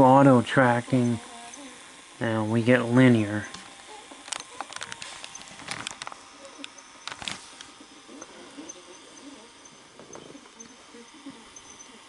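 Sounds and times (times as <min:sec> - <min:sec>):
faint muffled tape playback: 0:00.0 - 0:12.0
sharp clicks and ticks: 0:03.4 - 0:12.0.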